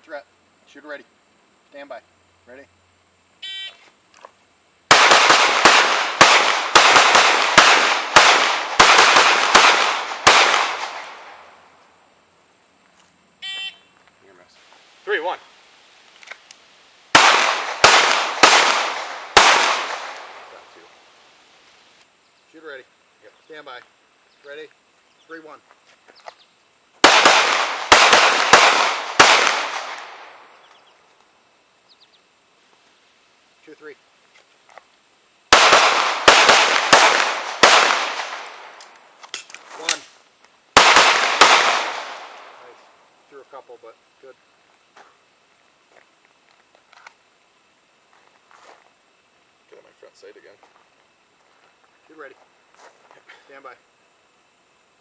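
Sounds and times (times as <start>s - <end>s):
shot timer beep: 3.4s - 3.8s, 13.4s - 13.8s
pistol shots: 4.9s - 11.5s, 17.1s - 20.8s, 27.0s - 30.4s, 35.5s - 39.0s, 40.8s - 42.7s.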